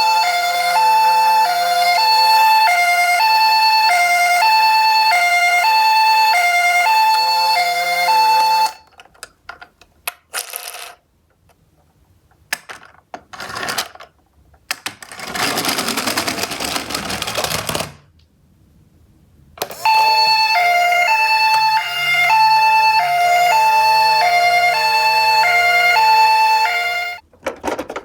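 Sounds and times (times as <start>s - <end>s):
two-tone ambulance siren: 0.0s - 8.9s, 19.6s - 27.2s
toy car rattling down a slope: 15.0s - 18.0s.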